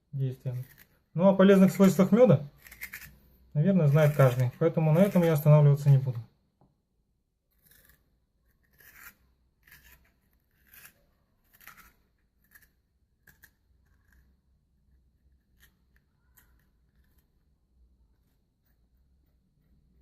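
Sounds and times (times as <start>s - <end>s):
spoon scraping radish: 0.3s - 6.2s, 7.5s - 17.5s.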